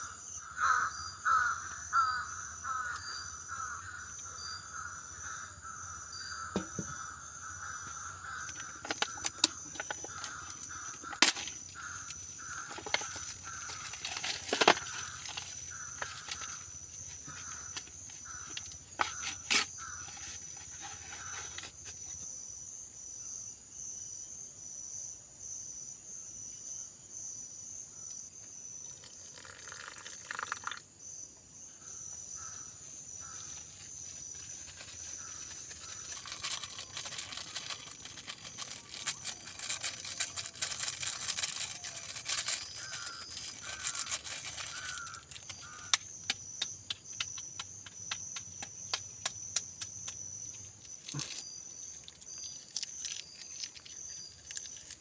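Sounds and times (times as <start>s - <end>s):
insects chirping: 0.0s - 55.0s.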